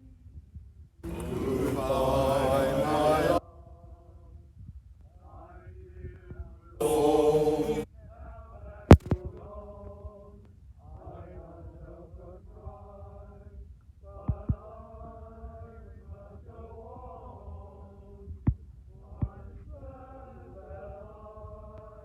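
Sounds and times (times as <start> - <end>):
male voice choir singing: 1.0 - 3.4, 6.3 - 7.9, 10.9 - 13.4.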